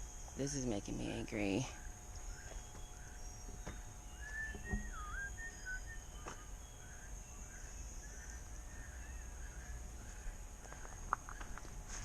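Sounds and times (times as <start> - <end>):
insect drone: 0.0 - 12.0
bird whistling: 2.3 - 9.6.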